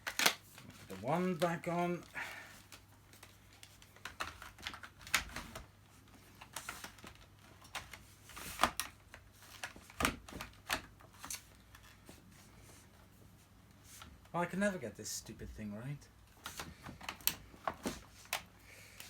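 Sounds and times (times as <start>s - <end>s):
plastic parts clicking and knocking: 2.6s - 5.7s, 6.4s - 12.0s, 16.4s - 19.0s.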